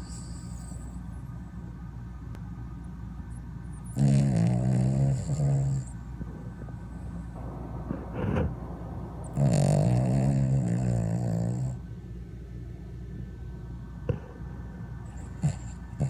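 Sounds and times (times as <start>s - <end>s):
dog snoring: 0.0s - 1.0s, 3.7s - 8.6s, 9.3s - 11.9s, 14.1s - 16.0s.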